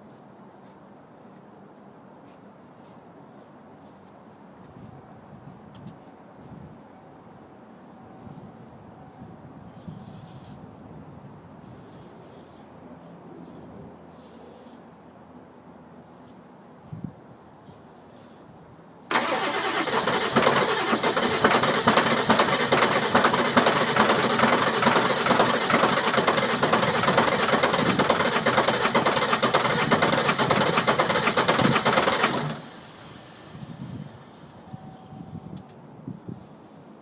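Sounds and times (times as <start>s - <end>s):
car engine cranking: 19.1s - 34.5s.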